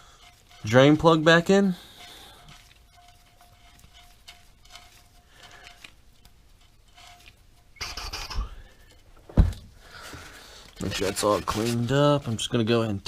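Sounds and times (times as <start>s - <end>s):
rustle: 0.0s - 9.1s
faint scraping: 0.0s - 13.0s.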